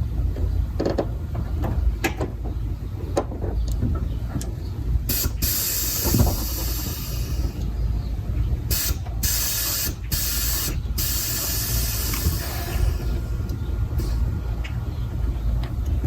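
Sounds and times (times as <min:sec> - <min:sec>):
air hissing out: 0:05.1 - 0:07.7, 0:08.7 - 0:14.4.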